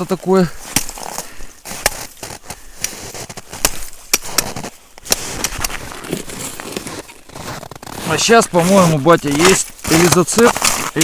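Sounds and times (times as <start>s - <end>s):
frozen snow crunching: 0.0s - 11.0s.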